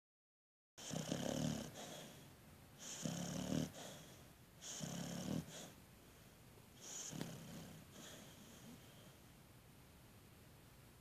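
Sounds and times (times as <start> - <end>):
snoring with wheeze: 0.8 - 2.2, 2.8 - 5.8, 6.8 - 8.8.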